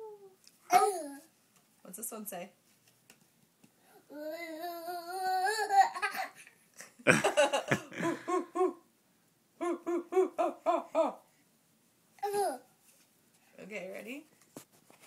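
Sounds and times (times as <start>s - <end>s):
toddler imitating animal noise: 0.0s - 1.3s, 12.2s - 12.7s
toddler laughing: 4.4s - 6.4s.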